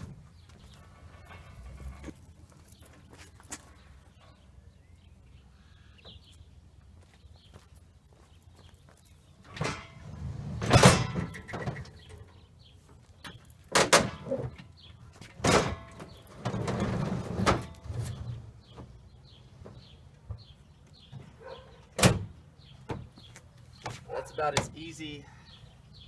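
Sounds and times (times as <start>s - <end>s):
metal scraping over tailgate: 0.0s - 2.2s, 9.4s - 12.3s, 15.4s - 18.7s
loud metal knocks: 10.6s - 11.8s.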